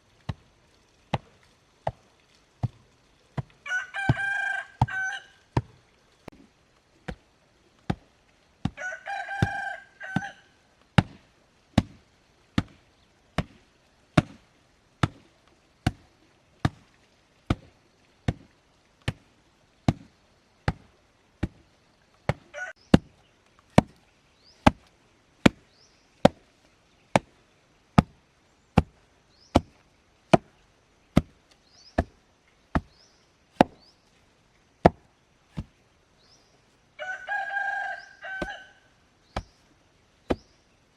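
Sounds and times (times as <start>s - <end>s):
rooster crowing: 3.6s - 5.5s, 8.8s - 10.6s, 22.5s - 22.8s, 37.0s - 39.0s.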